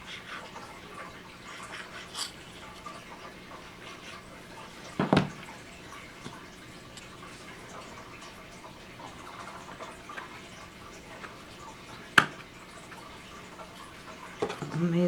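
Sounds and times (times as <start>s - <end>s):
wooden pieces knocking: 5.0s - 5.4s.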